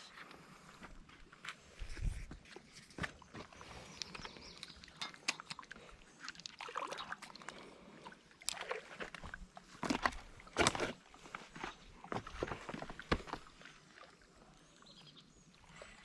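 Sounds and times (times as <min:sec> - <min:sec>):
knocks and scrapes on rocks: 0:09.0 - 0:13.5.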